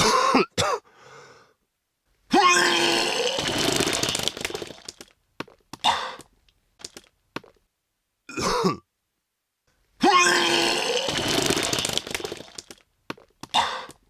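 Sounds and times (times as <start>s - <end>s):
person retching: 2.3s - 5.0s, 10.0s - 12.8s
person spitting: 2.3s - 5.0s, 10.0s - 12.8s.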